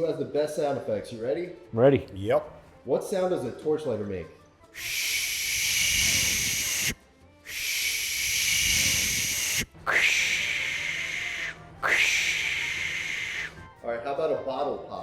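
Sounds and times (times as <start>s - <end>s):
mouth imitating hissing flame: 4.8s - 13.7s.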